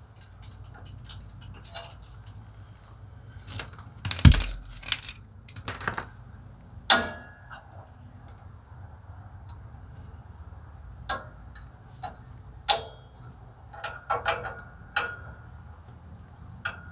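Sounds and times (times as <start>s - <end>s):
metal parts and tools clinking: 3.5s - 5.8s.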